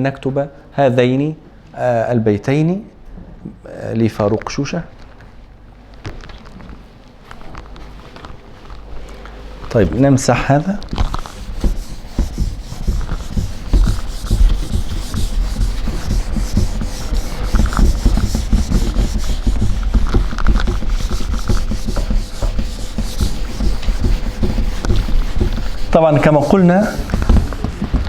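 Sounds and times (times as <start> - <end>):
eraser rubbing on writing board: 10.8 - 28.0.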